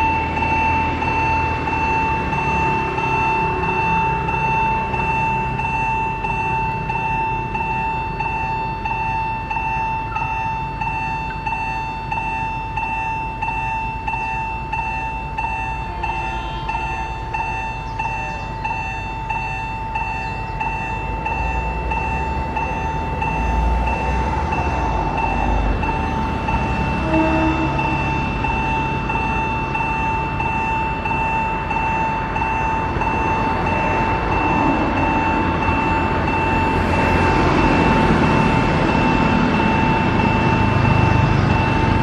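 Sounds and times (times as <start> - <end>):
level crossing warning bell: 0.0 - 42.0
train rumble: 0.0 - 42.0.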